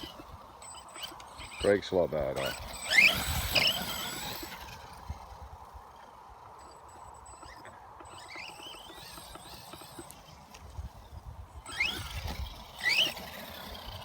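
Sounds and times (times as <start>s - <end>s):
electric motor whining: 0.0s - 14.0s.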